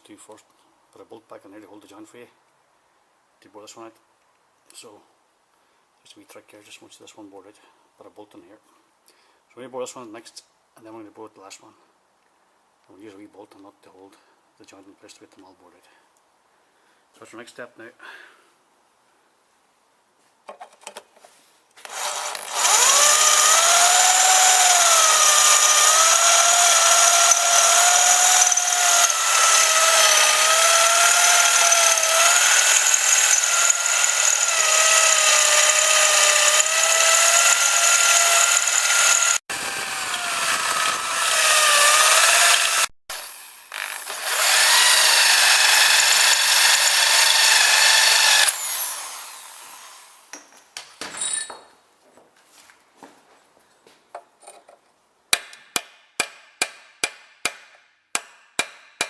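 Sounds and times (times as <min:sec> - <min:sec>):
electric drill whining: 0:21.8 - 0:50.2.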